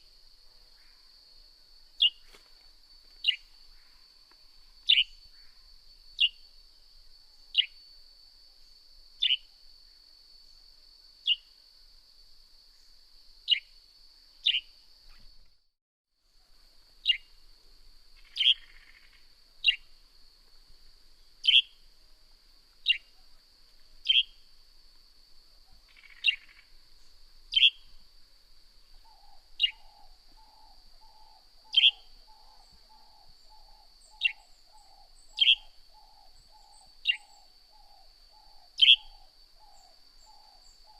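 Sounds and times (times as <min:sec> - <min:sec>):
sparrow chirping: 0:04.9 - 0:05.2, 0:09.2 - 0:09.4, 0:14.4 - 0:14.7, 0:18.2 - 0:19.0, 0:21.4 - 0:21.7, 0:22.8 - 0:23.0, 0:24.0 - 0:24.4, 0:27.5 - 0:27.8, 0:29.1 - 0:40.9.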